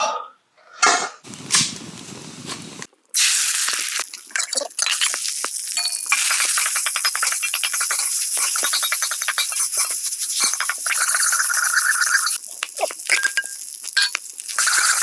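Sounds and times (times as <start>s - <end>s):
cooking noises: 0.6s - 15.0s
food sizzling in a frying pan: 3.2s - 15.0s.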